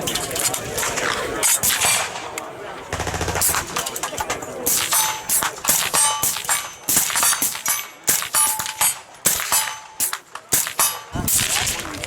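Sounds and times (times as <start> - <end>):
steel target clang: 4.7 - 11.2.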